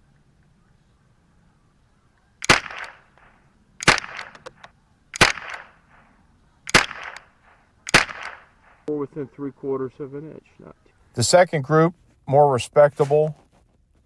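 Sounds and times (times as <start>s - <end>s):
small clicks: 2.2s - 5.7s
rifle shots: 2.4s - 8.9s.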